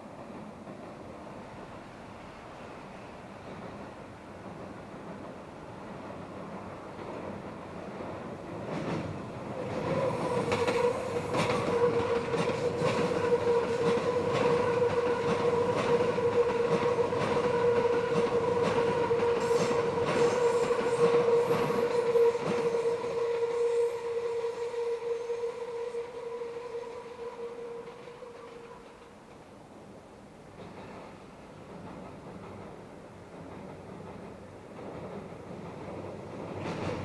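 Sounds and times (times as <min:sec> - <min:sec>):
train wheels squealing: 0:08.9 - 0:29.6.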